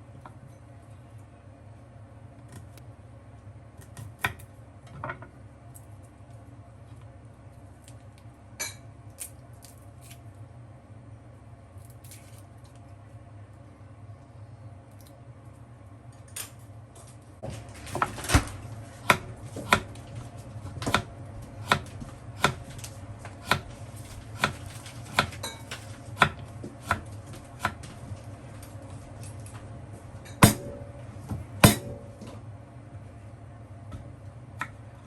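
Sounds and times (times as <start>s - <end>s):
knife chopping on cutting board: 19.0s - 20.0s, 20.6s - 22.7s, 23.3s - 27.9s, 31.6s - 32.1s.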